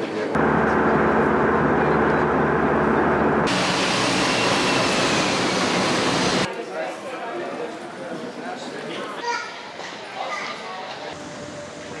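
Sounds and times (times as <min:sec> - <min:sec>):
hissing jet noise with whine: 0:00.4 - 0:06.5
jet engine rushing: 0:00.4 - 0:06.5.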